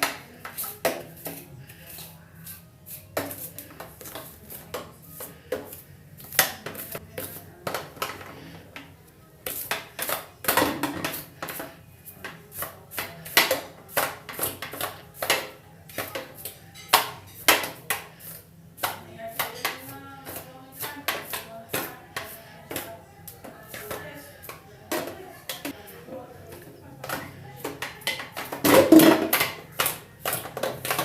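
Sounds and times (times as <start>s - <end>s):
comb scratching through hair: 0.4s - 5.4s.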